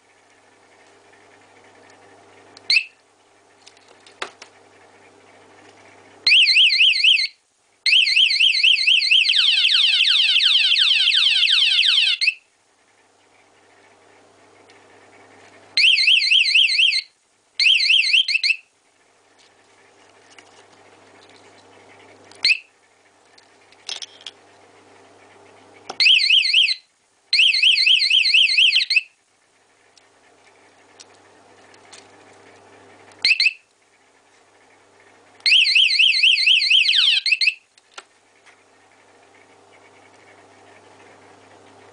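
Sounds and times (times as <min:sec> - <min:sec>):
warbling alarm siren: 0:06.2 - 0:07.3, 0:07.9 - 0:12.4, 0:15.8 - 0:18.6, 0:26.0 - 0:29.1, 0:33.2 - 0:33.6, 0:35.4 - 0:37.6.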